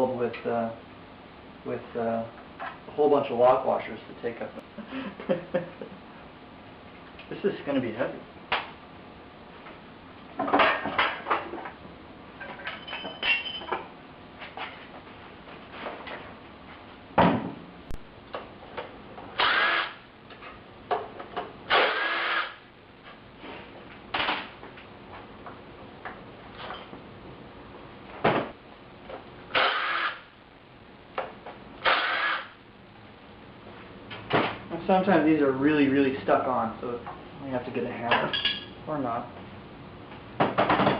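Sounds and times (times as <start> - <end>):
power tool short bursts: 19.4 - 20.0, 21.7 - 22.6, 29.5 - 30.3, 31.8 - 32.6.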